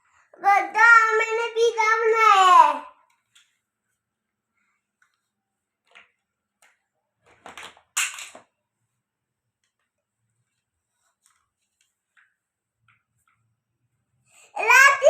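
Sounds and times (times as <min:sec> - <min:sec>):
plastic toy pieces clattering: 0:07.4 - 0:08.5.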